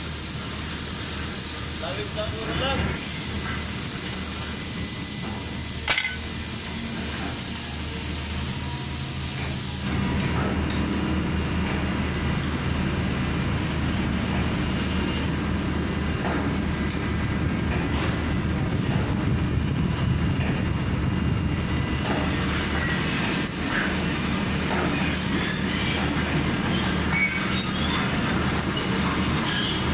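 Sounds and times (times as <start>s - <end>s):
welding arc crackling and hissing: 0.0s - 10.0s
welding machine engine humming: 0.0s - 10.0s.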